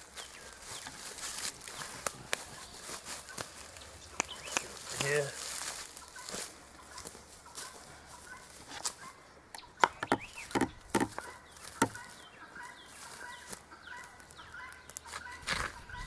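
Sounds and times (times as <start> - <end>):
chickens clucking: 0.0 - 16.0
sharp knocks: 9.8 - 12.0.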